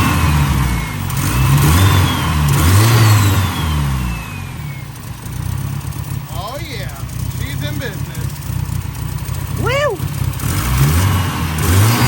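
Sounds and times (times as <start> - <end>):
car engine revving: 0.0 - 12.0.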